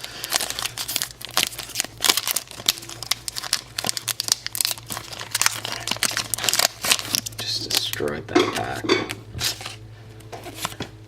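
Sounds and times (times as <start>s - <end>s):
plastic wrapper tearing and crinkling: 0.0s - 8.2s.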